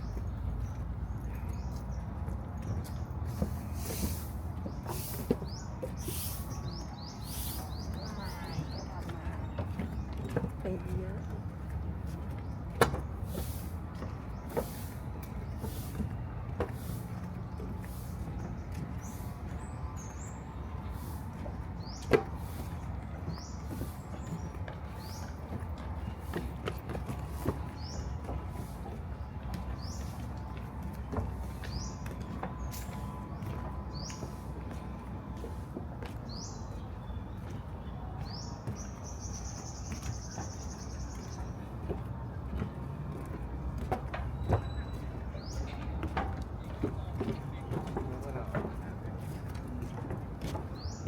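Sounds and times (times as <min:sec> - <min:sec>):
distant city traffic hum: 0:00.0 - 0:51.0.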